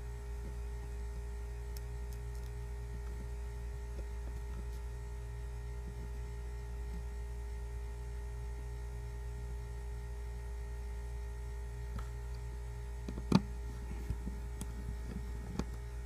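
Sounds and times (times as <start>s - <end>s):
electrical mains hum: 0.0s - 16.0s
faint small clicks: 1.7s - 2.6s.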